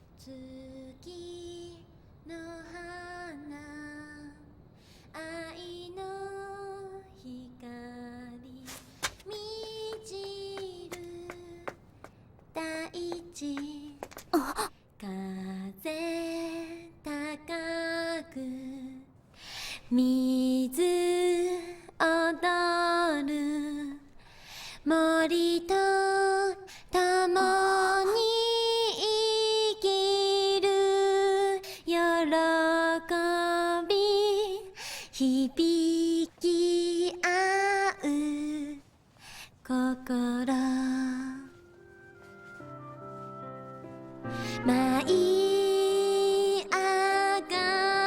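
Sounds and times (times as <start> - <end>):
woman singing lullaby: 44.5 - 48.0.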